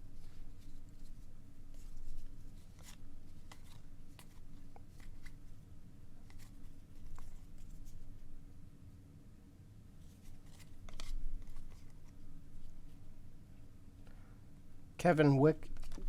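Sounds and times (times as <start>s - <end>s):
cards flipped by hand: 1.8s - 5.5s, 6.2s - 8.0s, 10.1s - 12.2s, 15.6s - 16.0s.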